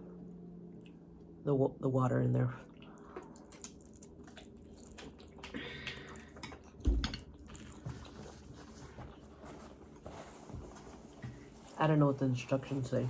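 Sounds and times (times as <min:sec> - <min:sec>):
wet chewing and slurping: 0:02.6 - 0:11.6.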